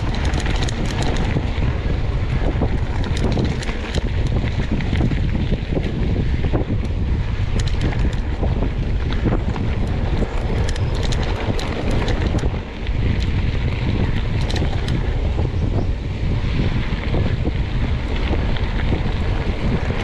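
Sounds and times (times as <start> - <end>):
bike clicks and rattles: 0.0 - 20.0
wind buffeting microphone: 0.0 - 20.0.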